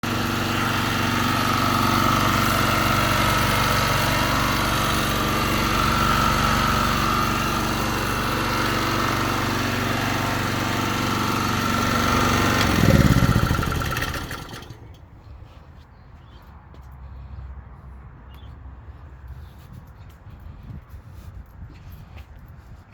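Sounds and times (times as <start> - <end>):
generator engine running: 0.0 - 15.3.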